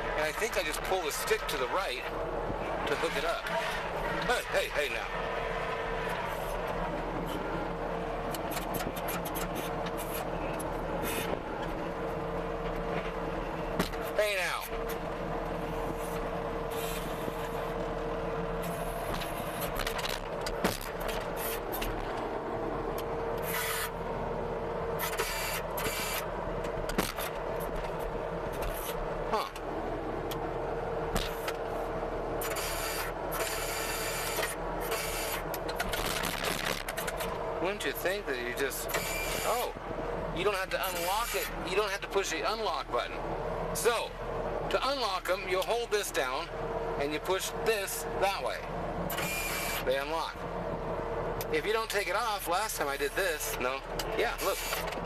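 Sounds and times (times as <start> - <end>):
diesel engine running: 0.0 - 55.0
sharp metallic clicks and scrapes: 8.3 - 11.8, 18.6 - 22.3, 23.0 - 24.0, 25.0 - 29.6, 32.4 - 37.9, 40.7 - 41.6, 53.0 - 55.0.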